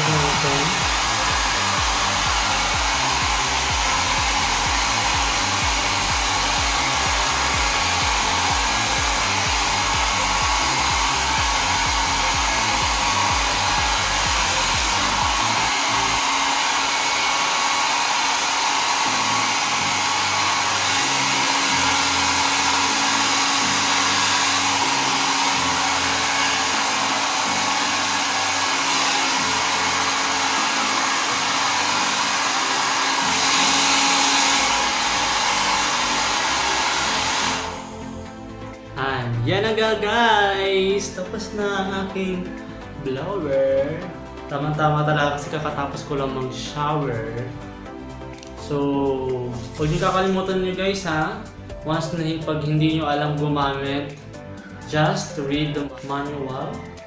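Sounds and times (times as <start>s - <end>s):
hair dryer blowing air: 0.0s - 39.4s, 40.3s - 57.0s.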